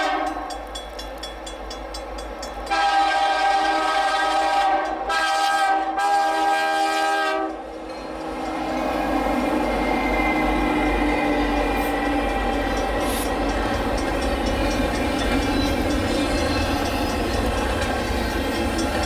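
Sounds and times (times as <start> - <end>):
locomotive air horn blowing: 0.0 - 0.5, 2.7 - 7.6
train rumbling: 0.0 - 19.0.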